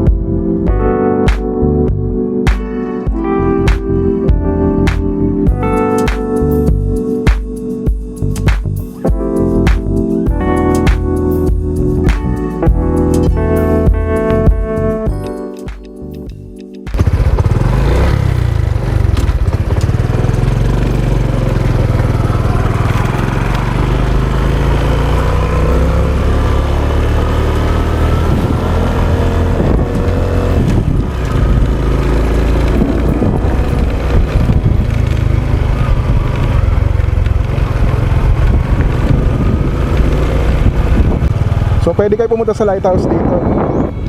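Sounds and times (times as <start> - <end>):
motorcycle engine running: 8.3 - 14.8, 16.9 - 44.0.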